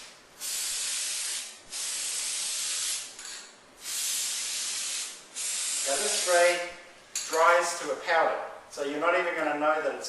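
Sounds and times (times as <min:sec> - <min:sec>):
aerosol spray hissing: 0:00.0 - 0:03.1, 0:03.8 - 0:06.5.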